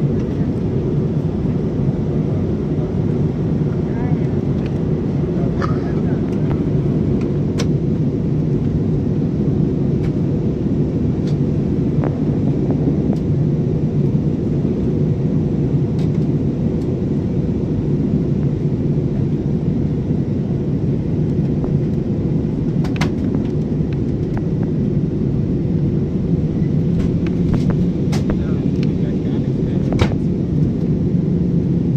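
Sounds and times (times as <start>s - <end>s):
plane engines droning: 0.0s - 31.9s
rushing air: 20.6s - 31.9s.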